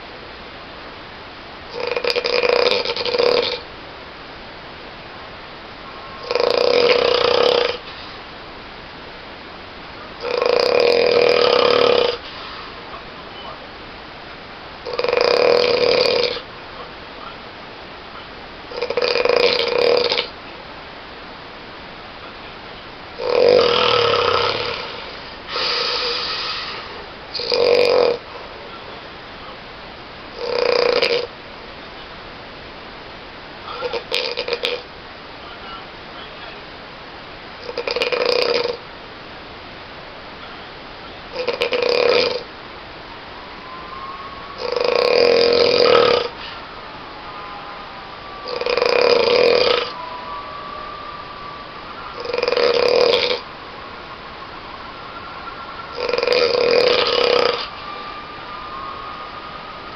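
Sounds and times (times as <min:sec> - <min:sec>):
person snoring loudly: 0:01.7 - 0:03.7, 0:06.1 - 0:07.9, 0:10.2 - 0:12.6, 0:14.8 - 0:16.5, 0:18.7 - 0:20.3, 0:23.2 - 0:28.4, 0:30.4 - 0:31.3, 0:33.7 - 0:34.8, 0:37.6 - 0:38.8, 0:41.3 - 0:42.5, 0:43.6 - 0:46.6, 0:47.3 - 0:53.5, 0:54.8 - 0:59.9.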